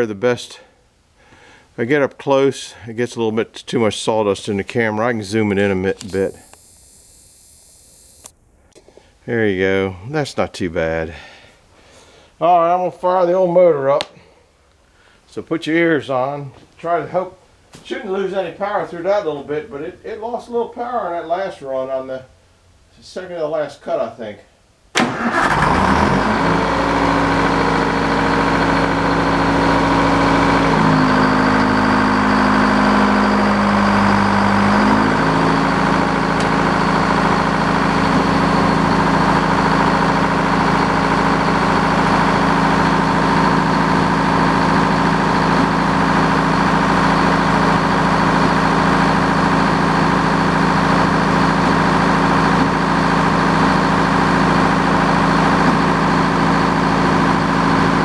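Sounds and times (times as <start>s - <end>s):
sawmill engine running: 4.5s - 8.3s, 25.0s - 58.0s.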